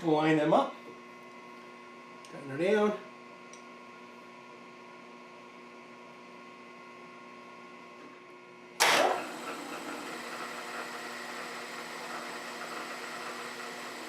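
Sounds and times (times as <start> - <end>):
electrical hum: 0.0 - 14.0
milling machine motor running: 8.8 - 14.0.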